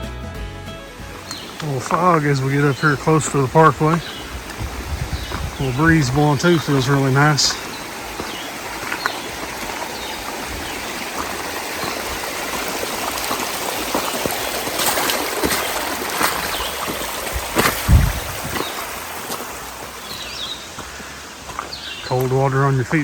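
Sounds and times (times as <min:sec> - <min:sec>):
stream gurgling over rocks: 0:01.1 - 0:23.0
knocks and splashes: 0:01.2 - 0:20.9
low thump: 0:17.7 - 0:18.6.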